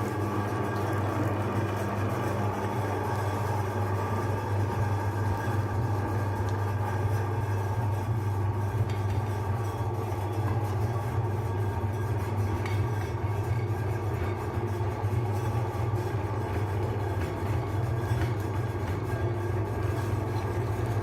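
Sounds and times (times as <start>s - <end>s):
electric meat grinder running: 0.0s - 7.0s.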